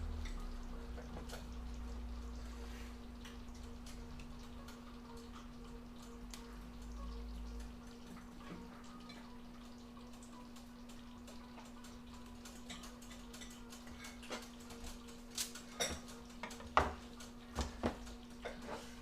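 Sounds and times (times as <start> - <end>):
low electrical hum: 0.0 - 19.0
kitchen items clicking and knocking: 12.4 - 18.9.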